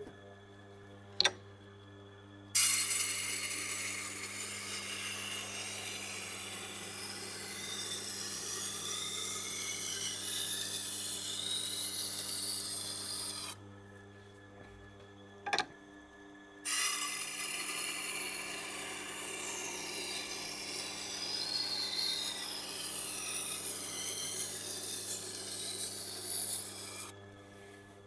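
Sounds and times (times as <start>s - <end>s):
knife grinding on stone: 2.6s - 13.6s, 16.7s - 27.1s
sharpener motor hum: 2.6s - 13.6s, 16.7s - 27.9s.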